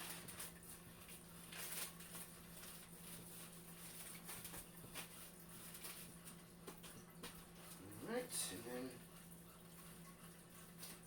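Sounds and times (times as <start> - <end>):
plastic sheeting rustling: 0.0 - 6.9.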